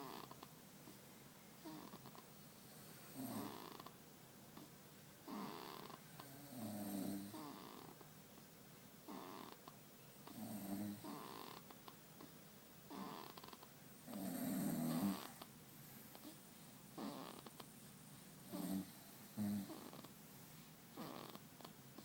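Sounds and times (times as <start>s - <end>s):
baby snoring: 0.0s - 0.5s, 1.6s - 2.2s, 3.0s - 4.0s, 4.6s - 8.0s, 9.0s - 12.3s, 12.9s - 15.5s, 16.1s - 17.7s, 18.4s - 20.2s, 20.9s - 22.0s.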